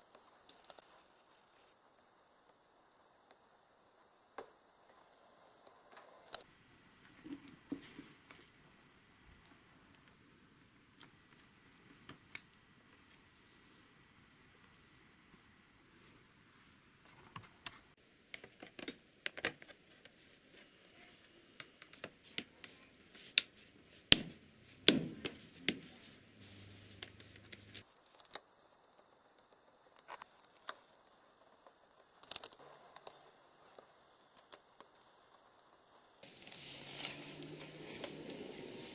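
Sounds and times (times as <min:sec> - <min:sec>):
hands clicking and tapping laptop parts: 0:18.3 - 0:20.2, 0:21.6 - 0:25.9.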